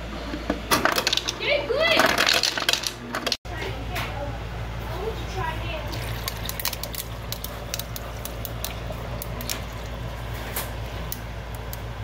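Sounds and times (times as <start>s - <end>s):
sharp clicks and crackles: 6.2s - 9.7s, 10.4s - 11.9s.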